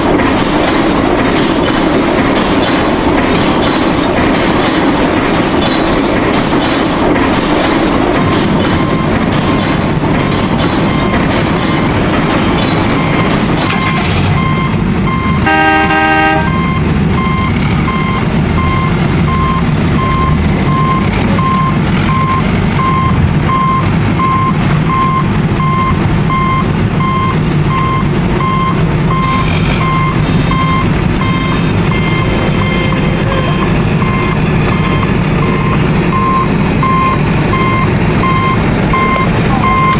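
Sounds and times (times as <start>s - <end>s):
engine rumbling: 0.0s - 39.9s
vehicle reversing beeper: 8.2s - 39.9s
short horn toot: 15.4s - 16.6s.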